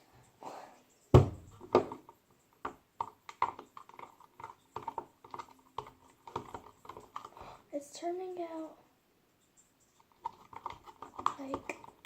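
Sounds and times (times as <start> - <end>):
containers knocking: 10.2 - 12.0.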